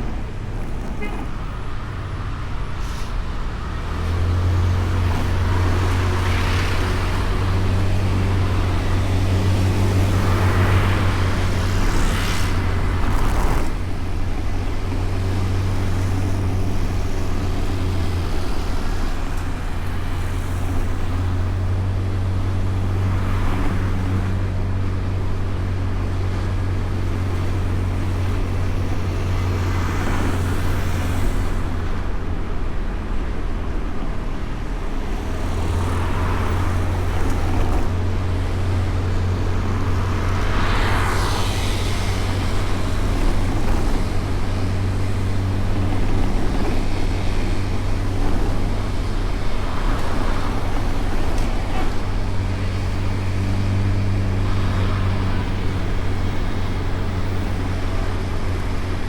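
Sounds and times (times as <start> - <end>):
road noise: 0.0 - 59.0
vehicles passing: 0.0 - 59.0
wind noise: 0.0 - 59.0
scooter engine rumble: 34.6 - 59.0.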